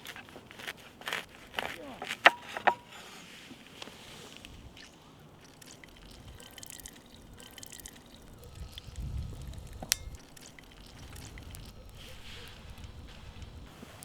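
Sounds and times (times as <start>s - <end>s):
steak searing crackles and pops: 3.7s - 14.0s.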